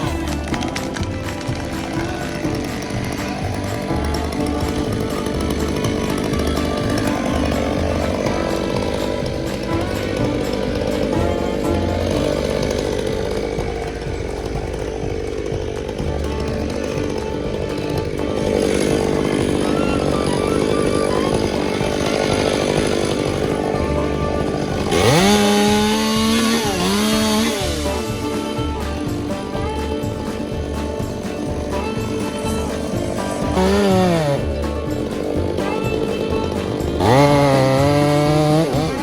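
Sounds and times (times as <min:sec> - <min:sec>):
chainsaw revving: 0:00.0 - 0:39.0
music playing: 0:00.0 - 0:39.0.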